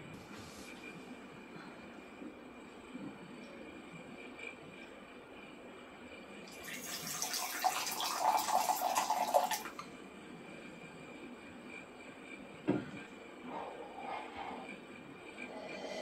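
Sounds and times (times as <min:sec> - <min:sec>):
water pouring: 0:06.5 - 0:09.8.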